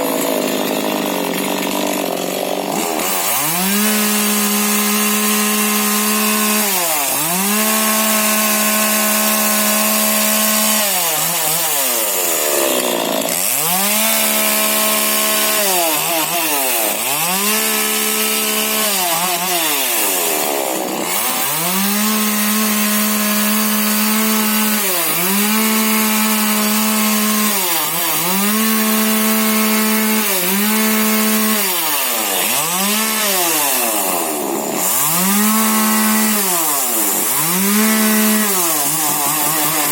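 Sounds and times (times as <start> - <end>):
chainsaw revving: 0.0 - 39.9.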